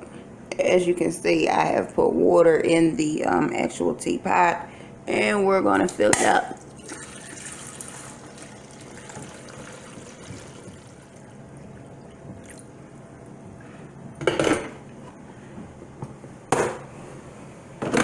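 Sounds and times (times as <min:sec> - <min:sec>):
water pouring into coffee maker: 0:06.6 - 0:12.7.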